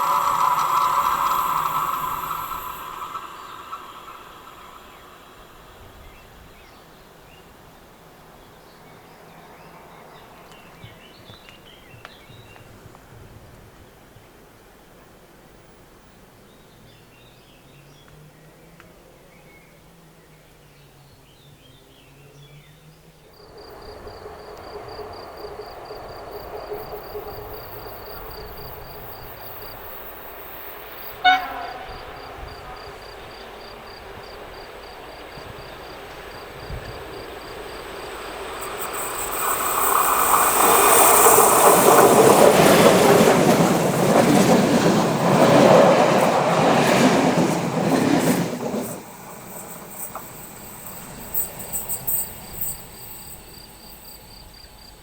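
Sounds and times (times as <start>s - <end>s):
train wheels on rails: 0.0s - 14.1s, 23.3s - 55.0s
train rumble: 0.0s - 16.1s, 23.3s - 55.0s
short train horn blast: 31.1s - 33.2s.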